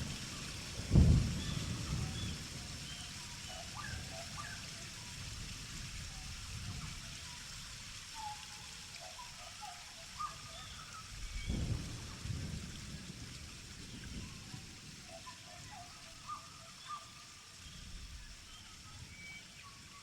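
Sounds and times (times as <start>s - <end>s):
low roll of thunder: 0.0s - 4.4s, 11.0s - 15.1s
steady rain falling: 0.0s - 20.0s.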